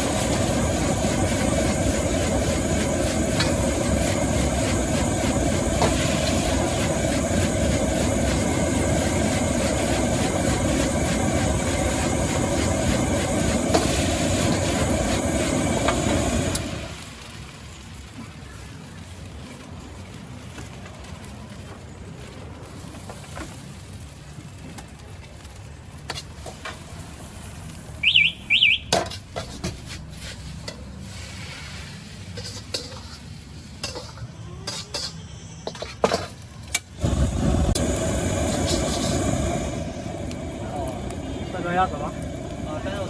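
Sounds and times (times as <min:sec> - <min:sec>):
burner hum: 0:00.0 - 0:18.8, 0:19.4 - 0:43.0
loud rushing sizzle: 0:00.0 - 0:24.6, 0:25.6 - 0:35.0, 0:35.7 - 0:43.0
metal spatula scraping wok: 0:29.0 - 0:36.4.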